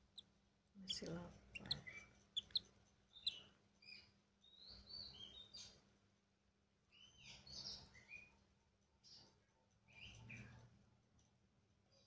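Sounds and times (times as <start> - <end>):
chicks begging chirps: 0.9 - 3.5.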